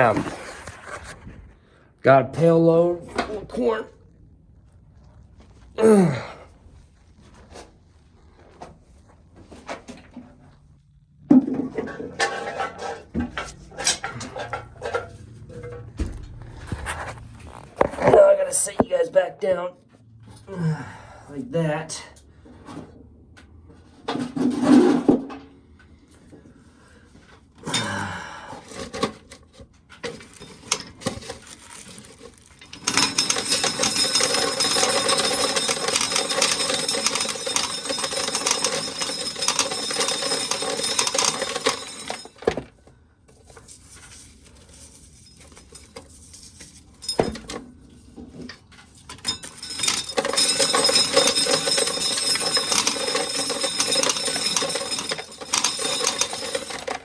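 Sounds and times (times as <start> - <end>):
corn sheller running: 30.1 - 42.6, 49.2 - 57.0
corn kernels rattling: 30.2 - 42.4, 49.4 - 57.0.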